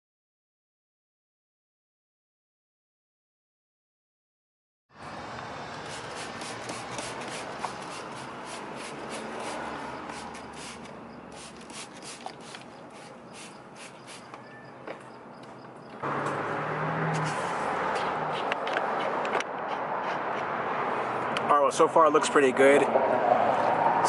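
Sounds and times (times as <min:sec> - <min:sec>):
cloth wiping car fender: 0:05.9 - 0:14.3.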